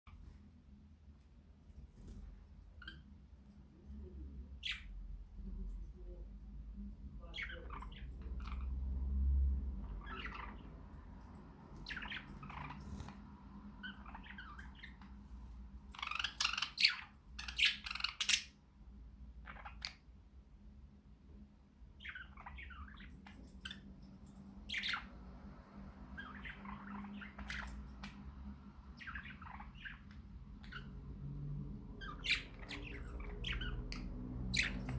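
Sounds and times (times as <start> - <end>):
budgerigars chirping and squawking: 2.8 - 3.1, 4.6 - 5.0, 7.2 - 9.1, 9.7 - 11.1, 11.7 - 18.6, 19.4 - 20.0, 22.0 - 24.0, 24.6 - 34.9.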